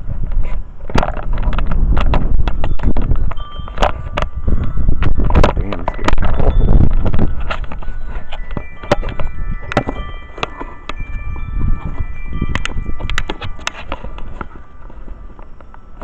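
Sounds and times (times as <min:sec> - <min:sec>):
wind rumble on microphone: 0:00.0 - 0:16.0
wind chimes ringing: 0:02.3 - 0:16.0
sharp ticks: 0:11.9 - 0:14.6.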